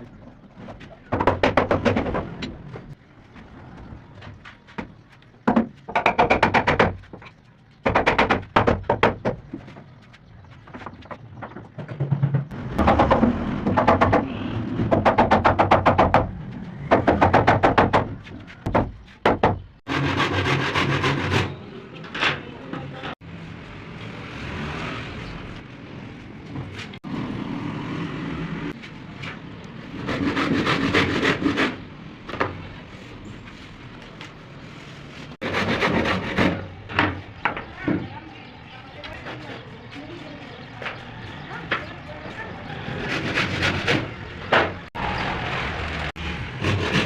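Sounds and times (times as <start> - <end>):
quiet scraping and handling: 32.7 - 35.4
rhythmic rasping on wood: 35.4 - 36.7, 46.6 - 47.0.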